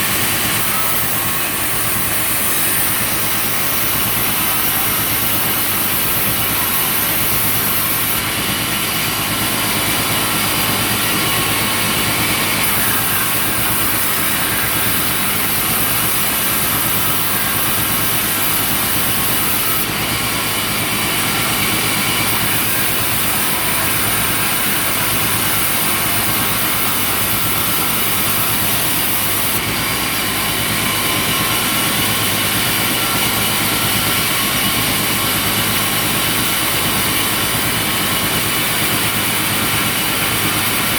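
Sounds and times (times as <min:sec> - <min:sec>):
sawmill engine running: 0:00.0 - 0:40.9.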